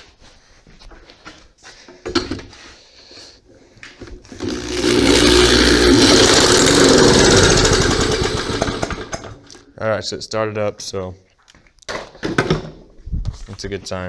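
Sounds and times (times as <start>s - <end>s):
recoil starter pulls: 4.0s - 9.7s
lawn mower engine running: 4.3s - 9.6s.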